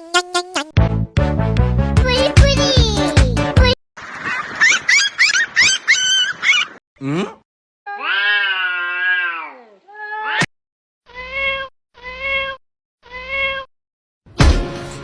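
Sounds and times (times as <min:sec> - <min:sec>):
cat meowing: 0:07.9 - 0:10.5, 0:11.1 - 0:13.7.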